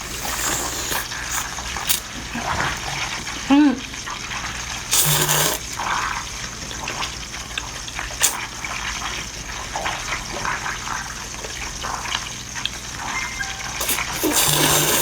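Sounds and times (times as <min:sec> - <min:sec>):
wet chewing and slurping: 0:00.0 - 0:02.9, 0:04.8 - 0:06.2, 0:06.9 - 0:08.8, 0:13.5 - 0:15.0.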